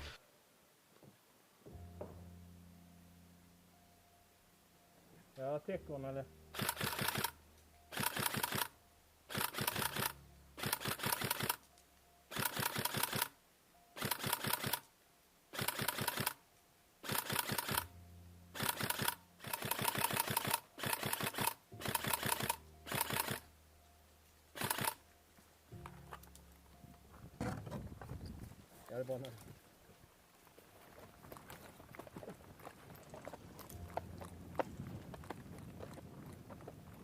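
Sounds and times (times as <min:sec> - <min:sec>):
airsoft rifle automatic bursts: 0:06.6 - 0:08.7, 0:09.3 - 0:11.6, 0:12.3 - 0:13.3, 0:14.0 - 0:14.8, 0:15.5 - 0:16.4, 0:17.0 - 0:17.8, 0:18.6 - 0:23.4, 0:24.6 - 0:25.0.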